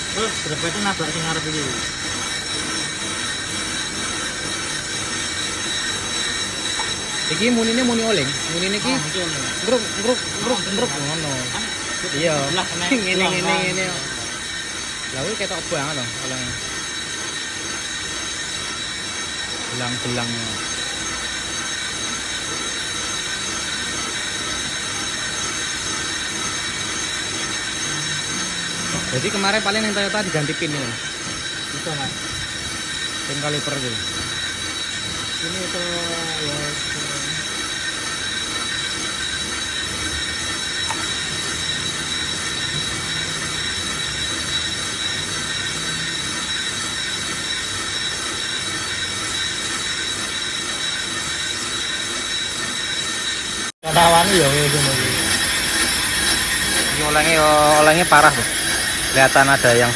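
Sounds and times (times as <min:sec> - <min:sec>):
lathe tool scraping metal disc: 0:00.0 - 0:59.9
motor hum: 0:00.0 - 0:59.9.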